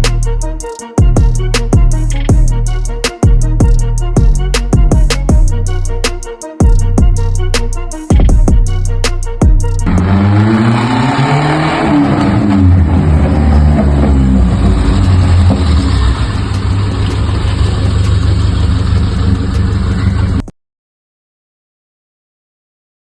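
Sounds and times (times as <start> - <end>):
car engine revving: 9.8 - 20.4.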